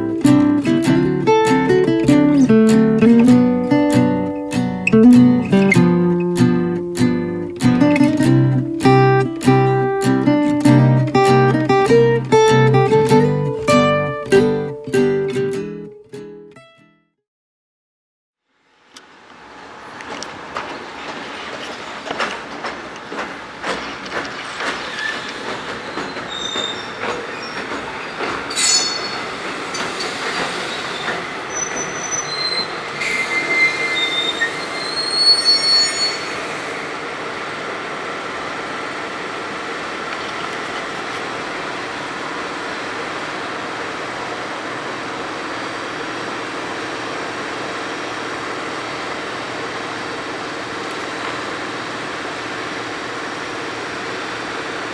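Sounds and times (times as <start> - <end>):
train wheels clacking over rail joints: 19.8 - 54.9
high-pitched wheel squeals: 24.9 - 36.8.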